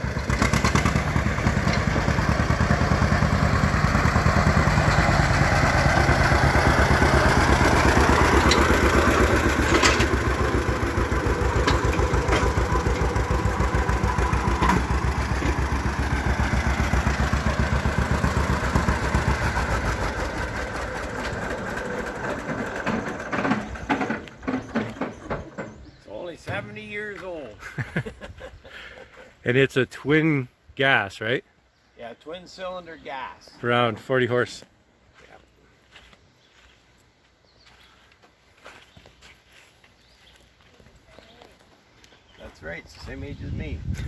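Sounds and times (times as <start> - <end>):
tractor engine pulsing: 0.0 - 27.0.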